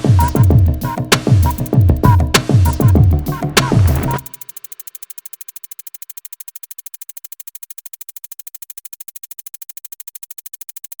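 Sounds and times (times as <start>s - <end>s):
rapid electronic pulsing: 0.0s - 6.7s.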